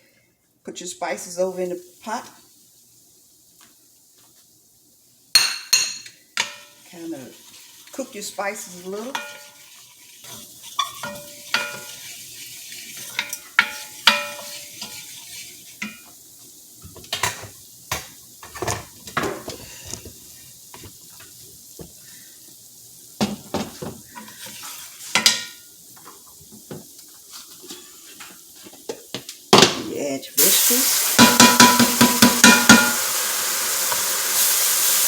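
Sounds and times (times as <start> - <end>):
spices sizzling in oil: 0.9 - 35.0
utensil scraping and clinking pot: 5.4 - 16.1, 24.1 - 25.6.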